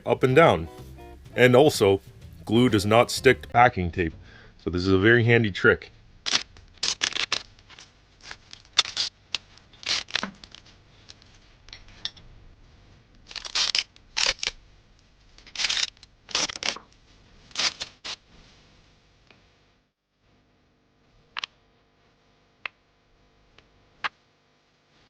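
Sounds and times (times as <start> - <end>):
packing tape pulled off roll: 6.2 - 11.4, 13.2 - 14.6, 15.4 - 18.3
crinkling and handling noise: 6.3 - 18.7.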